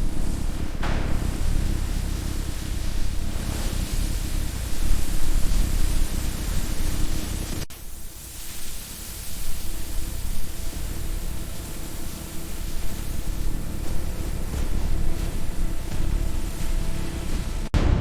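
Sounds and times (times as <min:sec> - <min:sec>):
hiss-like noise: 0:00.0 - 0:18.0
low rumble: 0:13.0 - 0:18.0.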